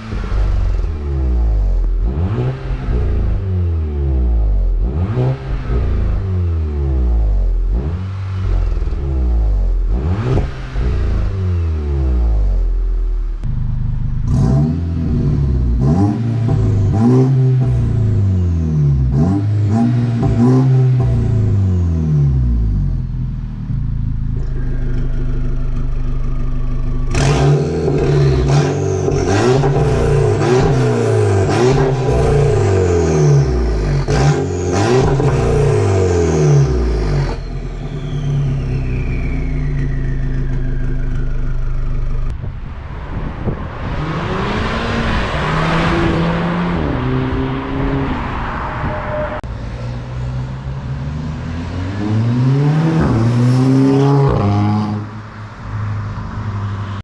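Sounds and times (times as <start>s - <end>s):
car engine revving: 0.0s - 57.0s
exhaust cracks: 22.6s - 47.8s
rushing noise: 38.0s - 50.1s.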